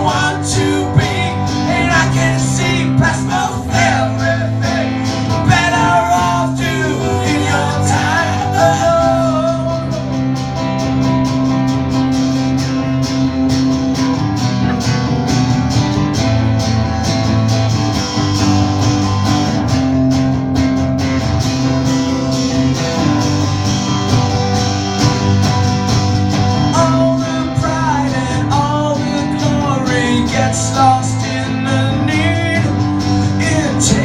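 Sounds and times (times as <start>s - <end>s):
guitar strumming: 0.0s - 34.0s.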